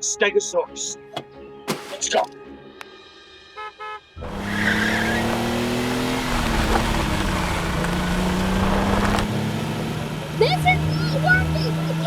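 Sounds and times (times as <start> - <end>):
vehicle engine running loudly: 4.2 - 12.0.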